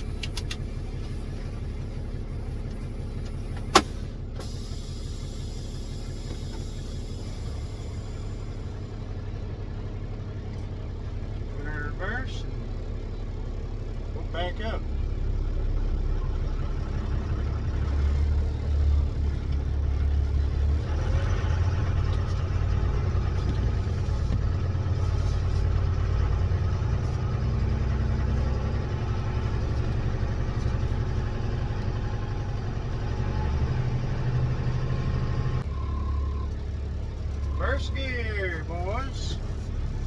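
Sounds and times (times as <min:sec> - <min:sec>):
diesel truck engine drone: 0:00.0 - 0:40.0
turbocharger whine: 0:14.2 - 0:40.0.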